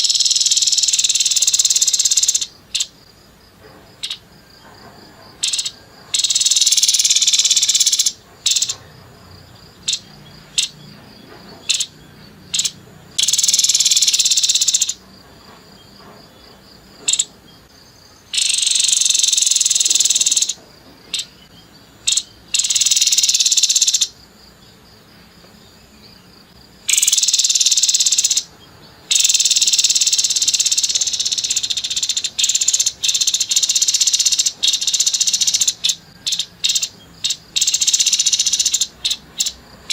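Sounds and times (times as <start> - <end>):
bird rattling calls: 0.0 - 3.0, 4.0 - 4.3, 5.4 - 9.0, 11.4 - 15.0, 17.0 - 17.3, 18.2 - 21.4, 22.0 - 24.2, 26.8 - 28.5, 29.1 - 39.9.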